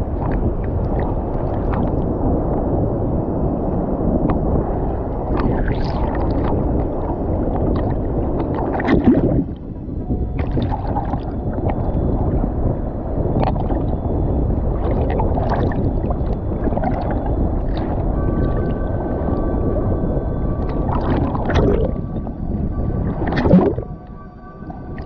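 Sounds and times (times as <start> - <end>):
sea waves sloshing: 14.8 - 25.0.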